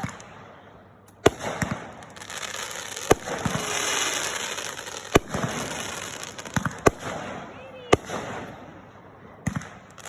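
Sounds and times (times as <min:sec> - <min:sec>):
crackling hiss: 0:01.1 - 0:07.2
fireworks bangs: 0:01.2 - 0:10.0.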